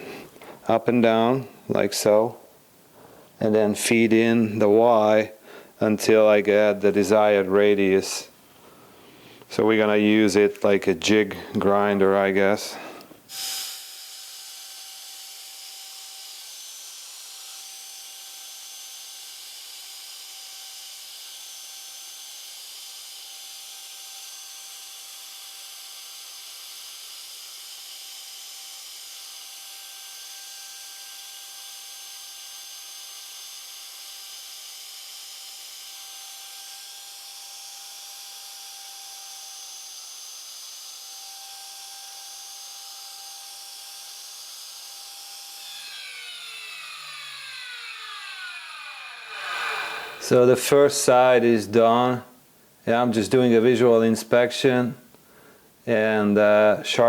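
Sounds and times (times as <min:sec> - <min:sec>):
grinding wheel hiss and whine: 0:45.6 - 0:50.8.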